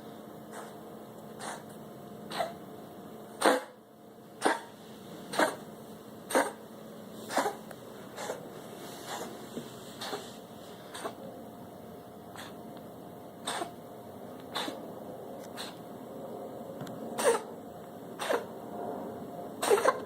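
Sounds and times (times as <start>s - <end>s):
pet coughing: 0.5s - 0.8s, 1.4s - 1.7s, 2.3s - 2.6s, 3.3s - 9.4s, 10.0s - 11.3s, 12.3s - 12.6s, 13.4s - 13.8s, 14.5s - 14.9s, 15.5s - 15.8s, 17.2s - 17.5s, 18.2s - 18.5s, 19.6s - 20.0s.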